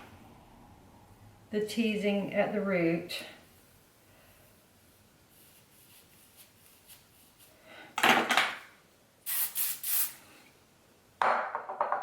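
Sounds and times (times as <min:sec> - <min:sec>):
brush rasping through hair: 0:05.3 - 0:07.6.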